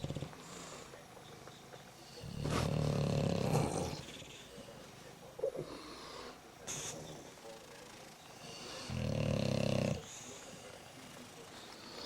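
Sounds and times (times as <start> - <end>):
dog snorting: 0.0 - 0.6, 2.2 - 4.2, 8.4 - 10.2
dog snoring: 0.0 - 0.7, 2.1 - 4.3, 8.4 - 10.2.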